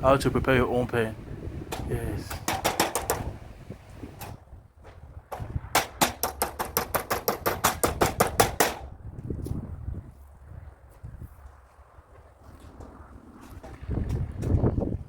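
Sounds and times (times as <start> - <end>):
hammer striking nails into wood: 1.7 - 3.4, 5.3 - 8.9.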